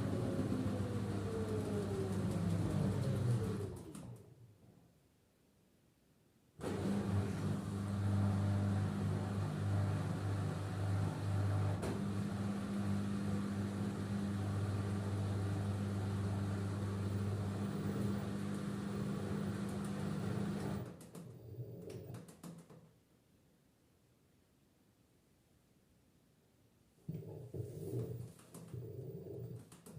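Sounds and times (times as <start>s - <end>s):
washing machine spinning: 0.0s - 4.0s, 6.6s - 20.9s.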